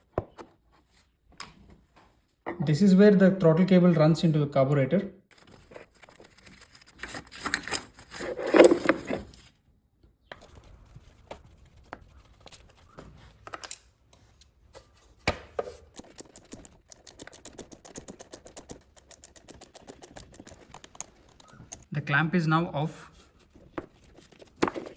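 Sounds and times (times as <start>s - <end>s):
tools clicking and tapping: 15.5s - 21.9s
quick even ticks: 16.0s - 21.9s.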